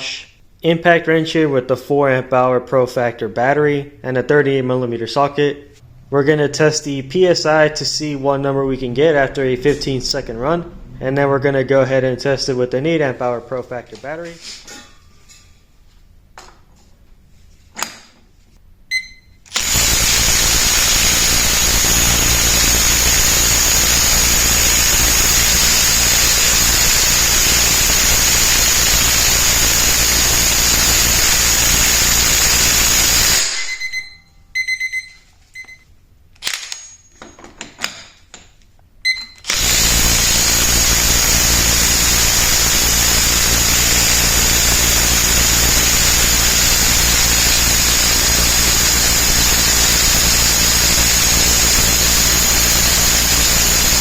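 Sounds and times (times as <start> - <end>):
short beeps: 18.9 - 19.4, 33.6 - 35.9, 39.0 - 39.5
impact wrench hammering: 19.5 - 33.8, 39.5 - 54.0.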